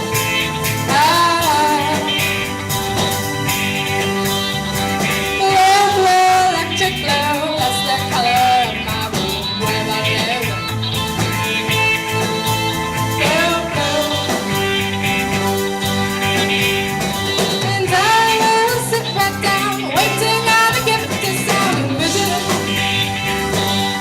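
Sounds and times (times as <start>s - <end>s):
person singing: 0.0s - 2.6s, 5.4s - 11.1s, 13.1s - 15.0s, 17.4s - 23.2s
live rock band playing: 0.0s - 24.0s.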